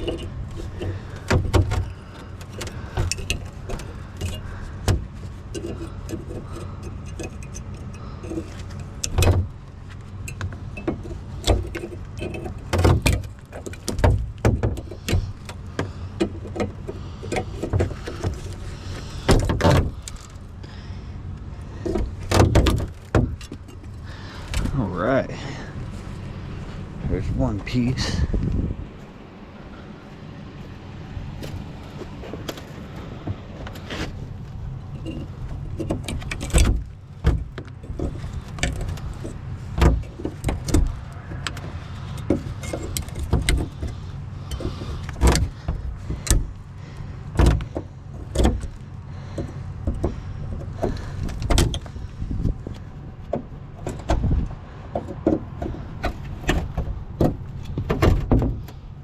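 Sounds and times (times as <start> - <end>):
metal scrap clinking and knocking: 0.0 - 9.5, 10.2 - 20.4, 35.0 - 46.6
steady low hum: 0.0 - 59.0.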